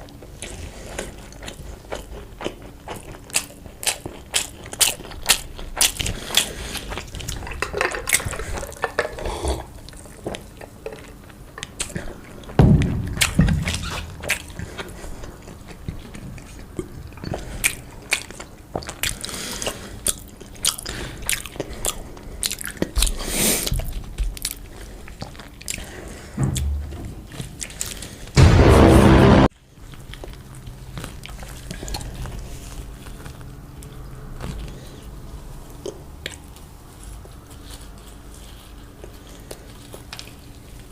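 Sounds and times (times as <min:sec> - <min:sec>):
person biting and chewing food: 0:00.0 - 0:12.6, 0:13.2 - 0:26.3.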